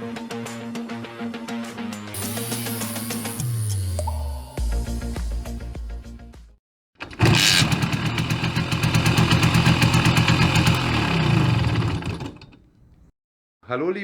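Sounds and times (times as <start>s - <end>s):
moped two-stroke engine idling: 7.0s - 13.0s.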